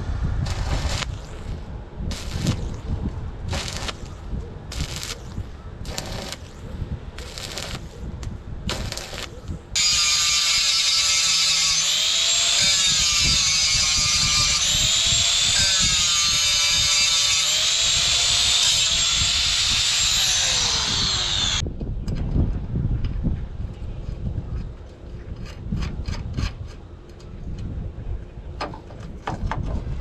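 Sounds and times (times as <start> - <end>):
power tool whining on metal: 0.5 - 2.8, 3.5 - 6.6, 7.2 - 8.0, 8.7 - 21.6.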